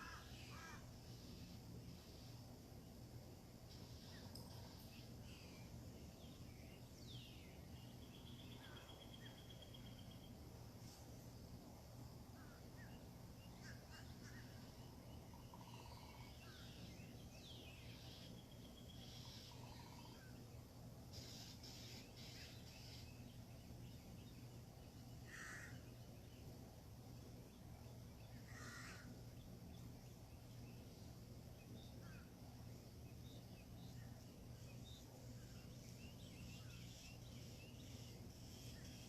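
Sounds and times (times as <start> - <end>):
faint bird chirping: 0.0 - 39.0
steady low hum: 0.0 - 39.0
bird harsh calls: 25.2 - 25.9, 28.4 - 29.2.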